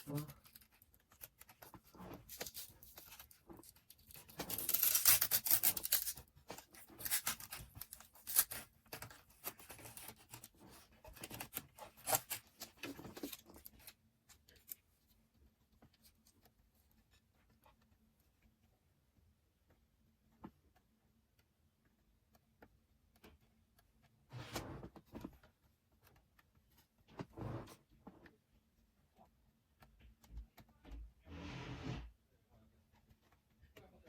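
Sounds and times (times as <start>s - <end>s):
cables and case parts handled: 0.0s - 14.9s.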